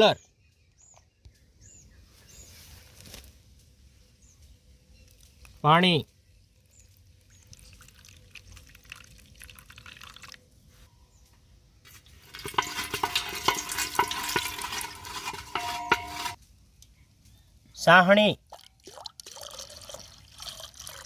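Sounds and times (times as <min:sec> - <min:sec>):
water pouring into container: 0:06.8 - 0:10.4, 0:18.5 - 0:21.0.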